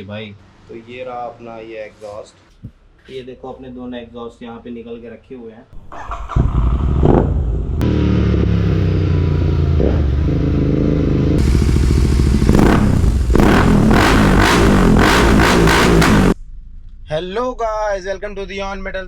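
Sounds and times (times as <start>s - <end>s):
motorcycle engine revving: 6.2s - 16.4s.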